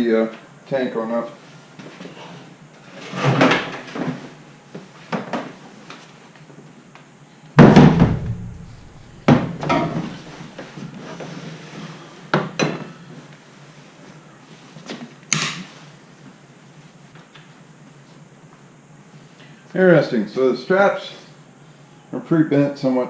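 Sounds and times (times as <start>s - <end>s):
sprayer tank knocks and thuds: 7.6s - 10.3s.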